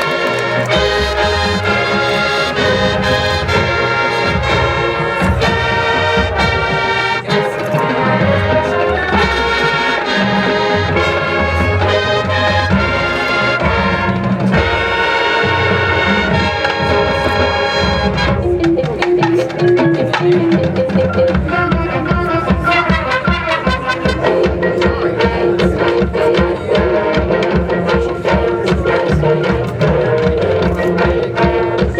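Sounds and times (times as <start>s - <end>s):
marching band brass: 0.0s - 31.9s
marching drums: 0.0s - 31.9s.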